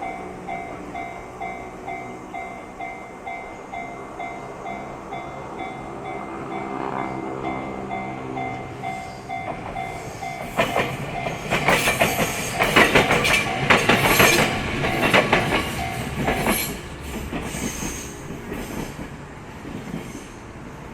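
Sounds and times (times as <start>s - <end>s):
railway crossing bell clanging: 0.0s - 18.9s
train motor hum: 4.0s - 20.9s
train wheels clacking on rail joints: 8.4s - 20.4s.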